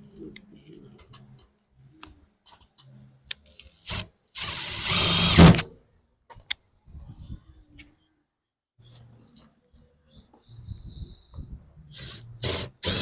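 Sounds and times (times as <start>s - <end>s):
impact driver driving screw: 3.9s - 5.7s, 12.4s - 13.0s.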